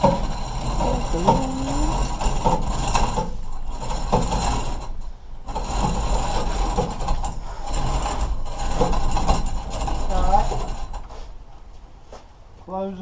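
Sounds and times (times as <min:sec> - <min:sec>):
chain clicking through hoist: 0:00.0 - 0:04.9.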